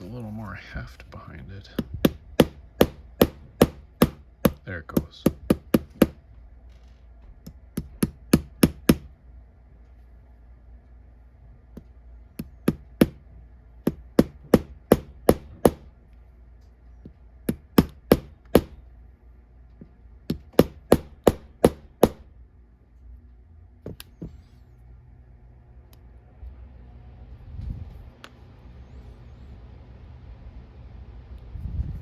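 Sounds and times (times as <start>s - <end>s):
small hammer tapping metal: 1.8s - 6.2s, 17.5s - 18.8s, 20.3s - 22.2s.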